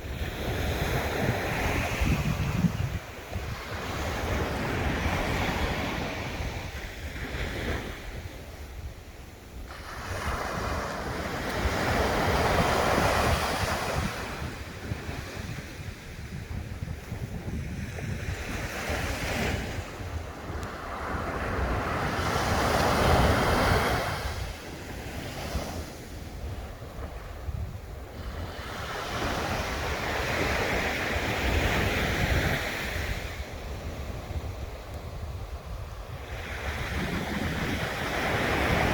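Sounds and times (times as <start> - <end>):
sea waves breaking on shore: 0.0 - 38.9
wind rumble on microphone: 0.0 - 38.9.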